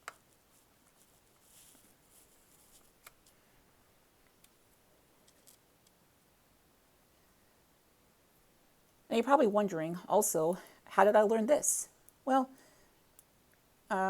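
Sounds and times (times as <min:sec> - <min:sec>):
light scrape of laptop parts: 0:00.3 - 0:03.4.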